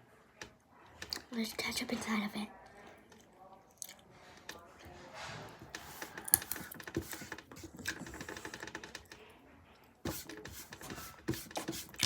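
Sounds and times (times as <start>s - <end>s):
almonds being chewed: 3.0s - 4.1s, 6.0s - 6.9s.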